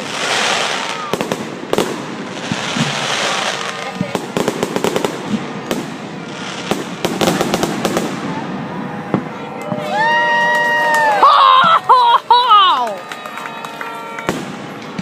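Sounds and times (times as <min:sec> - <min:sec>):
fireworks bangs and crackling: 0:00.0 - 0:10.4, 0:14.0 - 0:15.0.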